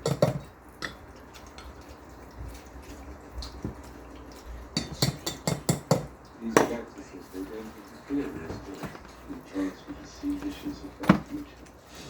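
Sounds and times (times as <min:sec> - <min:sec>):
kitchen utensils tapping: 0:00.0 - 0:01.8, 0:04.7 - 0:06.9.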